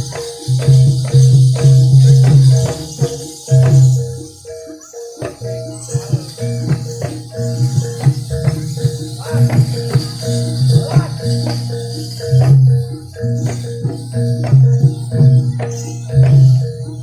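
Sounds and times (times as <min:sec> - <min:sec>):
high jingling: 0:00.0 - 0:17.0
metal-keyed tones: 0:00.0 - 0:17.0
fast drum strokes: 0:05.2 - 0:16.8.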